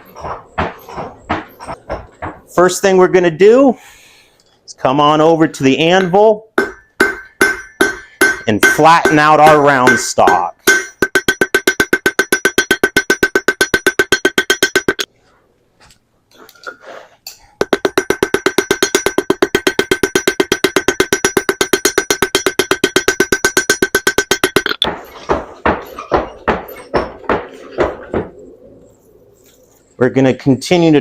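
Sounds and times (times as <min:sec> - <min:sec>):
hammer striking steel on anvil: 0:05.9 - 0:15.1, 0:17.3 - 0:27.4.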